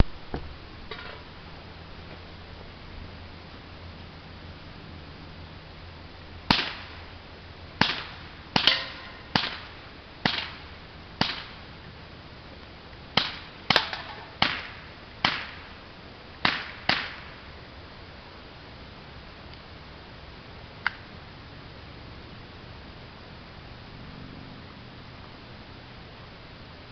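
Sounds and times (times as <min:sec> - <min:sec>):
air pistol shots: 0:06.5 - 0:06.9, 0:07.8 - 0:10.6, 0:11.2 - 0:11.6, 0:13.2 - 0:15.6, 0:16.4 - 0:17.3.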